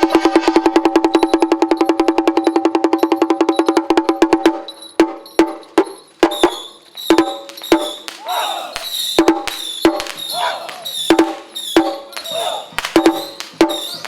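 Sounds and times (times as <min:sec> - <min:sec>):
ringing pitched percussion roll: 0:00.0 - 0:08.1.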